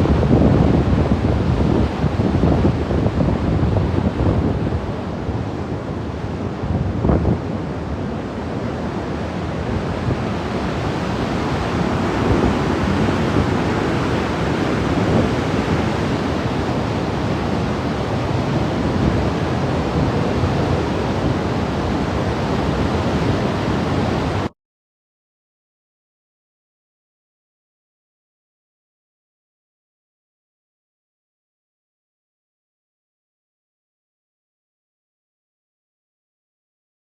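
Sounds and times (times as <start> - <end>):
wind on microphone: 0.0 - 24.5
flood water rushing: 4.6 - 24.5.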